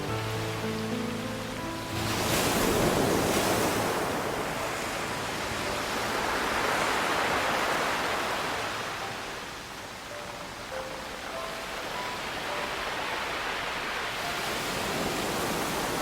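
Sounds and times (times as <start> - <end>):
ocean surf breaking on shore: 0.0 - 16.0.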